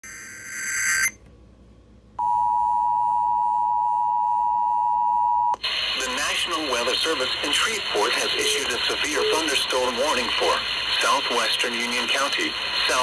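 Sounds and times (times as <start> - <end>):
harsh warbling data tone: 0.0 - 1.2, 7.6 - 10.5
steady warning alarm tone: 0.0 - 1.2, 8.0 - 10.1.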